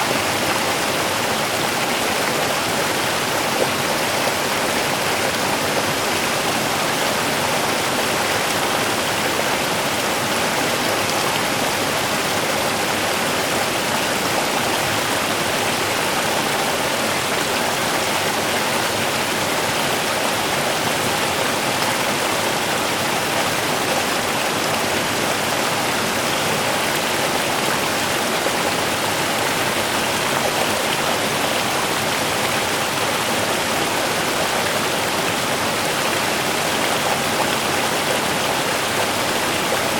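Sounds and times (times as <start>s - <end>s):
river water rushing and babbling: 0.0s - 39.9s.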